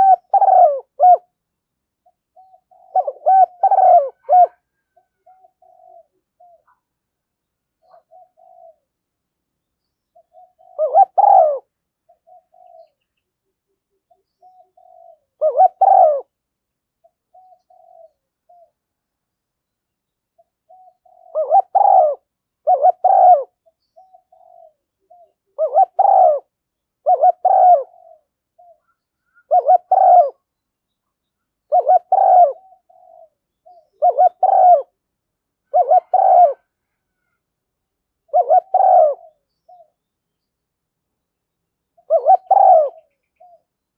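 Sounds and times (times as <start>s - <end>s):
dove cooing: 0.0s - 1.4s, 2.0s - 6.9s, 7.8s - 8.9s, 10.1s - 13.0s, 13.7s - 16.4s, 17.0s - 18.8s, 20.4s - 30.5s, 31.7s - 35.0s, 35.7s - 37.4s, 38.2s - 40.0s, 42.0s - 43.7s.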